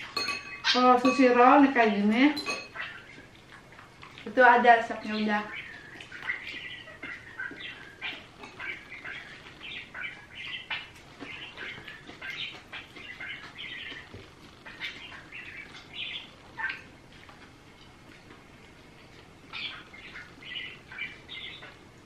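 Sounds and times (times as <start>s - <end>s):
small bird chirping: 2.3s - 17.0s, 19.1s - 21.9s.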